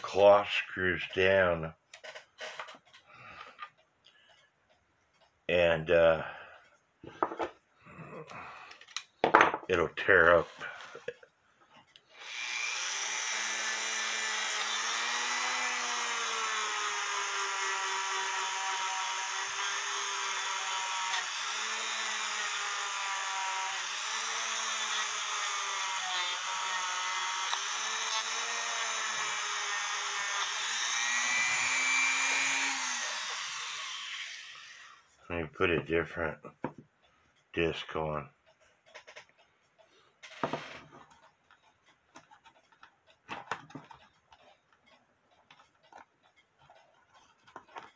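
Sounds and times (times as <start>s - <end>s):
rotary tool buffing metal: 12.1s - 35.2s, 37.7s - 47.9s.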